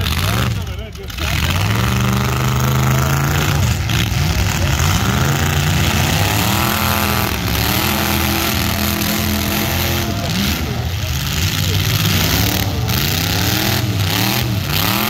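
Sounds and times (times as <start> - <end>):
car engines revving: 0.0 - 15.0.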